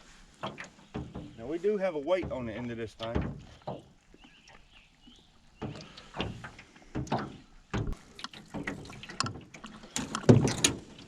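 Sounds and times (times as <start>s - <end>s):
water splashing: 0.0s - 11.0s.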